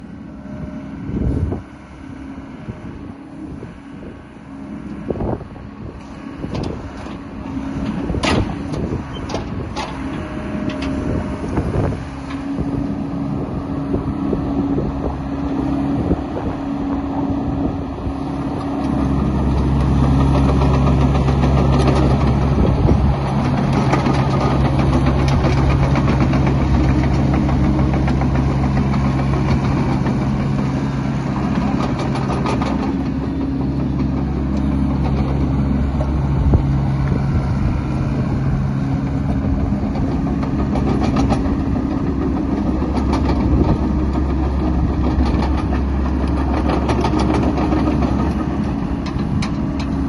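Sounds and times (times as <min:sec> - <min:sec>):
diesel engine running: 0:00.0 - 0:50.0
sharp engine knocks: 0:07.8 - 0:12.6, 0:39.2 - 0:50.0.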